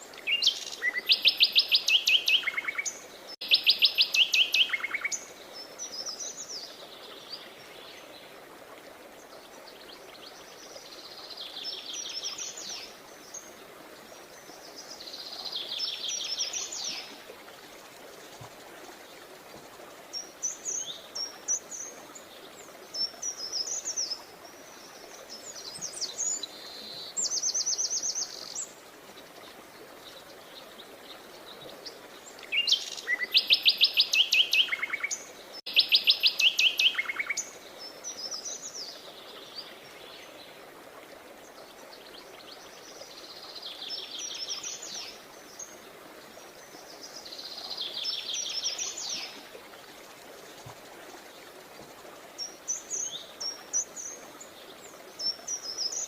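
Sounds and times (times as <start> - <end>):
faint steady hiss: 0.0 - 56.0.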